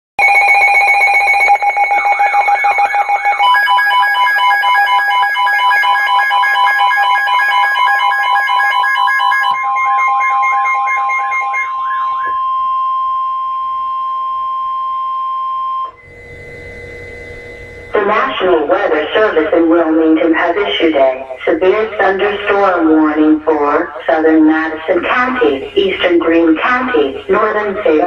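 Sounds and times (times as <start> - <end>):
rapid electronic alert beeping: 0.2 - 13.4
steady long alarm tone: 0.2 - 28.0
warbling siren-like tone: 0.2 - 28.0.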